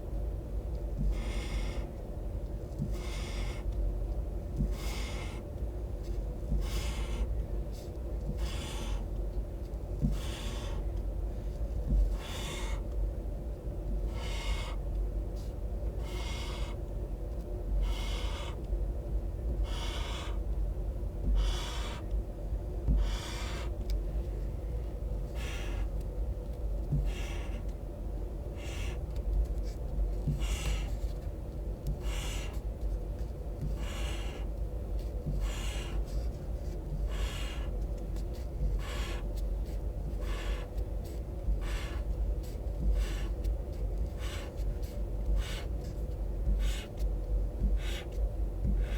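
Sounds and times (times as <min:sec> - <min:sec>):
steady low hum: 0:00.0 - 0:48.9
felt tip swishing on paper: 0:35.3 - 0:48.9.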